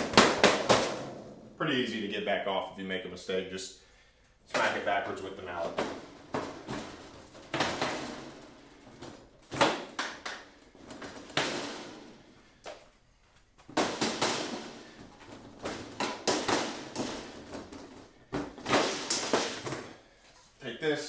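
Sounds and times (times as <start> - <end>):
plastic panels rattling: 4.5 - 12.4, 13.6 - 20.0.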